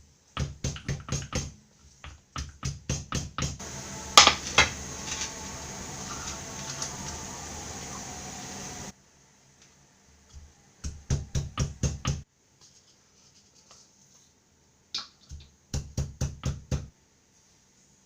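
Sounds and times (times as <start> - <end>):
steady hiss: 3.5 - 10.2, 17.0 - 18.0.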